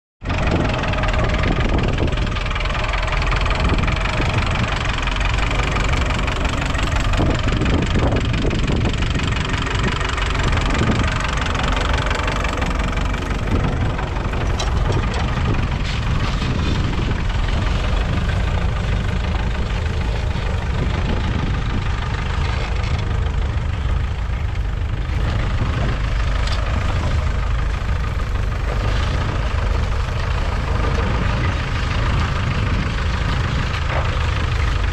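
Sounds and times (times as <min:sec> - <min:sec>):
tractor diesel engine running: 0:00.2 - 0:34.9.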